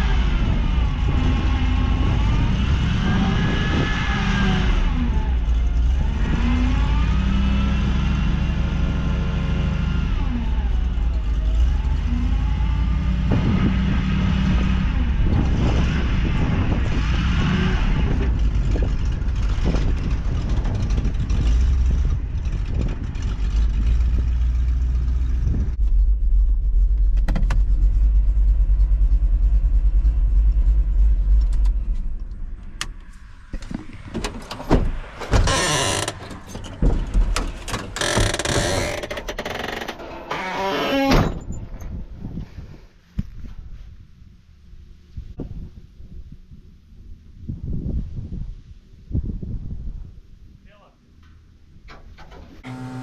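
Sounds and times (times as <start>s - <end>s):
engine low rumble: 0.0s - 53.0s
metal clunks and rattles: 0.9s - 3.6s, 13.2s - 16.2s, 31.4s - 40.4s, 41.0s - 42.2s, 51.2s - 52.7s.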